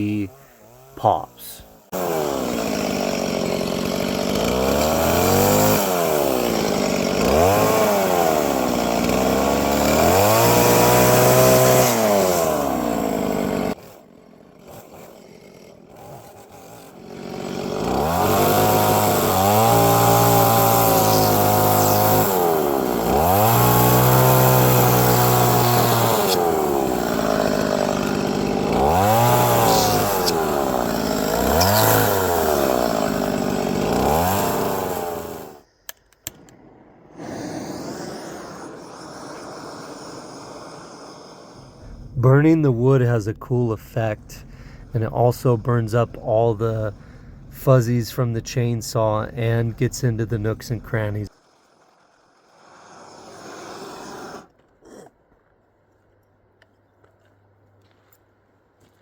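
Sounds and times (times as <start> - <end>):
chainsaw revving while cutting wood: 0.2 - 35.6, 37.2 - 42.2.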